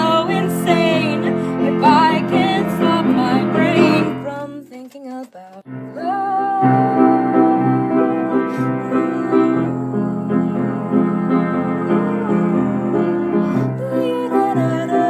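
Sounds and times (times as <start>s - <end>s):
pop song with keyboard chords: 0.0s - 4.6s.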